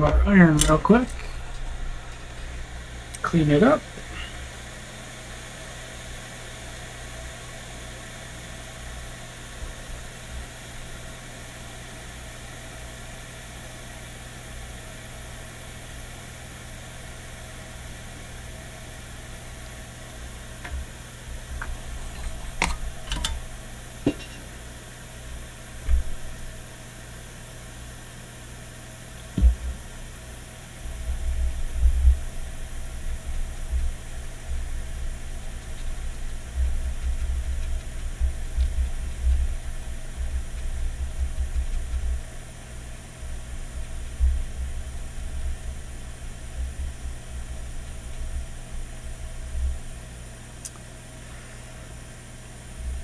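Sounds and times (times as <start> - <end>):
equipment hum and hiss: 0.0 - 53.0
handling bumps and knocks: 21.6 - 24.5.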